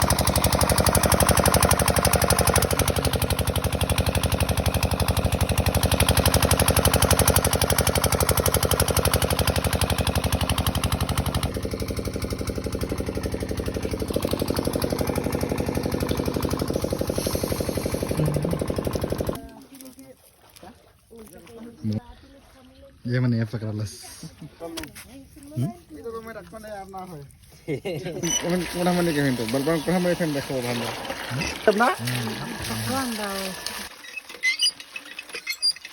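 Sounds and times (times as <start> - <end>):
machine running with rapid pulsing: 0.0 - 19.4.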